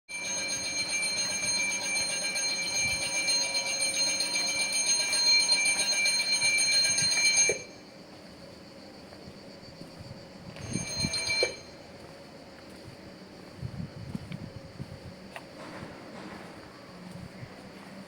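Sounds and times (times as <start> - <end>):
railway warning bell ringing: 0.1 - 7.9, 10.5 - 12.0.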